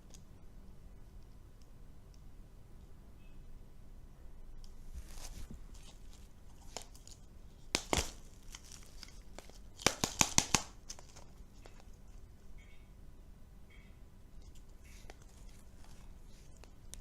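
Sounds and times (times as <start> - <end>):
faint rustling: 4.6 - 10.0, 14.3 - 17.0
candy packaging crackling: 4.7 - 12.3, 14.4 - 17.0.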